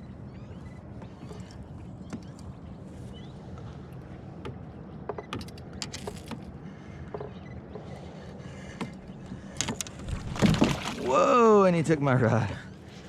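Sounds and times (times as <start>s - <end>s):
fishing gear clicking and knocking: 4.4s - 7.4s, 8.8s - 11.0s.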